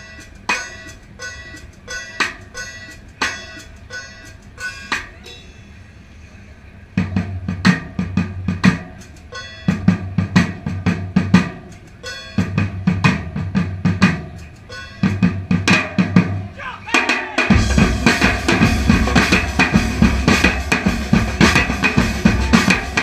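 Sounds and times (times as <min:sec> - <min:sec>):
bass-heavy drum beat: 0:07.0 - 0:23.0.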